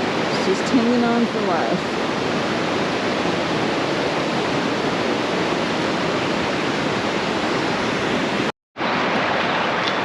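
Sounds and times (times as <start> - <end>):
river rushing: 0.0 - 10.0.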